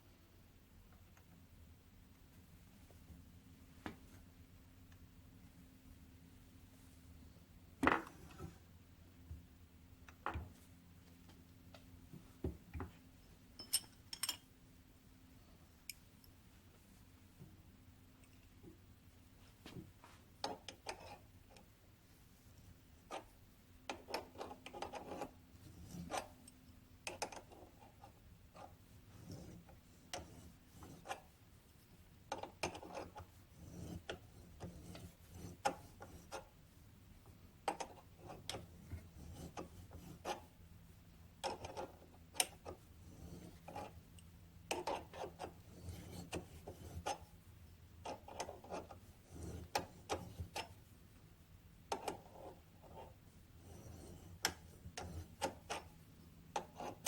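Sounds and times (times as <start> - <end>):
faint steady hum: 0.0 - 57.0
metal parts clicking and scraping: 13.6 - 14.5.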